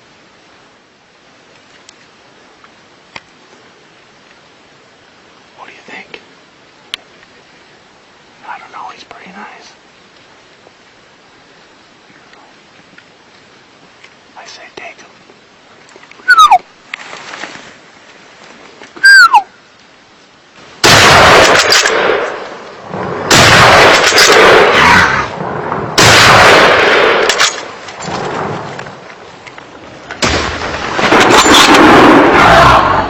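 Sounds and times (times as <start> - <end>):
bird falling whistle: 16.2 - 16.6, 19.0 - 19.5
rifle shots with echo: 20.8 - 28.5.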